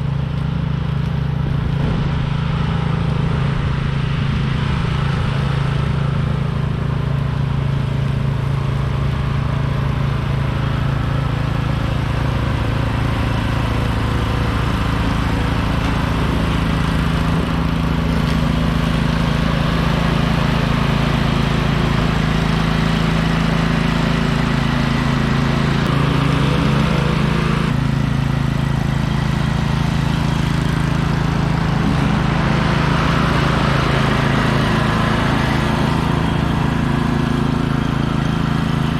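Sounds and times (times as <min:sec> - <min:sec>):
riding lawn mower engine: 0:00.0 - 0:38.9.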